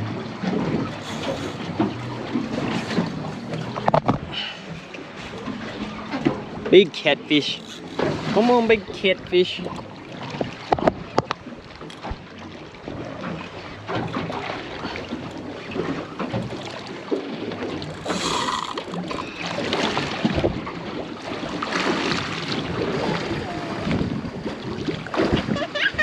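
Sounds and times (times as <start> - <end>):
water sloshing against boat hull: 0.0 - 26.0
wind buffeting microphone: 22.5 - 26.0.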